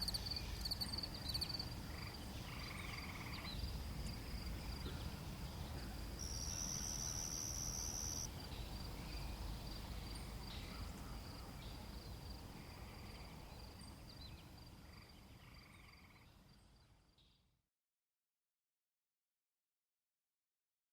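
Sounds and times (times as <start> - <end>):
crickets trilling: 0.0 - 4.8, 6.2 - 8.3.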